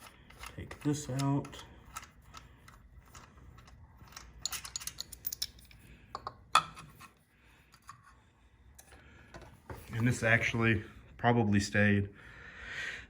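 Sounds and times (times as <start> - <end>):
metallic clicks and rattles of parts: 0.0 - 8.1.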